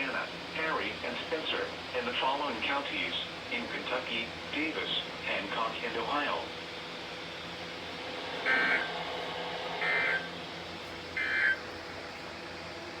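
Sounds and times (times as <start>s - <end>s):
warbling data tone bursts: 8.4s - 9.1s, 9.8s - 10.4s, 11.2s - 11.6s.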